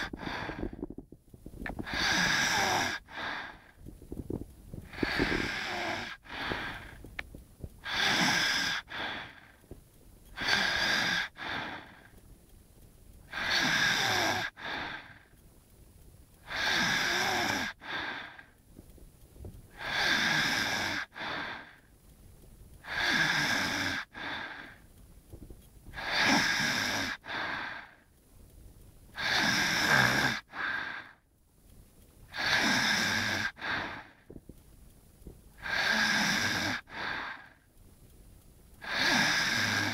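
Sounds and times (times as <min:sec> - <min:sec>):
person snoring: 0:00.0 - 0:00.8, 0:01.7 - 0:03.8, 0:04.8 - 0:07.0, 0:07.8 - 0:09.6, 0:10.4 - 0:12.1, 0:13.3 - 0:15.2, 0:16.4 - 0:18.4, 0:19.7 - 0:21.8, 0:22.8 - 0:24.8, 0:25.9 - 0:28.0, 0:29.2 - 0:31.2, 0:32.3 - 0:34.2, 0:35.6 - 0:37.6, 0:38.8 - 0:39.9.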